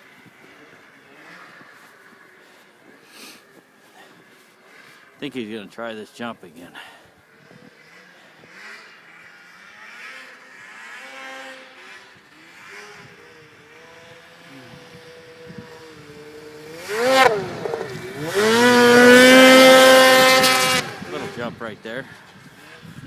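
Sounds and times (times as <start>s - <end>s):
snowmobile engine revving: 0.0s - 23.0s.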